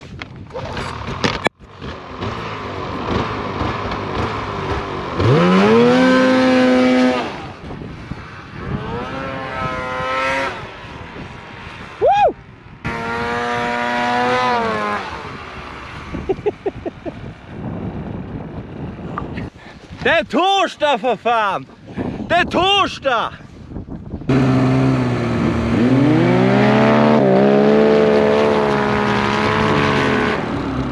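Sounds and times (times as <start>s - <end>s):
snowmobile engine revving: 0.7s - 12.2s, 12.8s - 17.0s, 24.3s - 30.9s.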